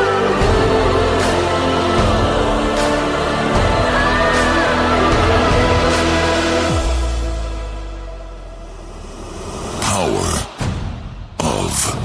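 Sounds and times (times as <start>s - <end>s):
processed vocal sample: 9.7s - 10.7s, 11.3s - 12.0s.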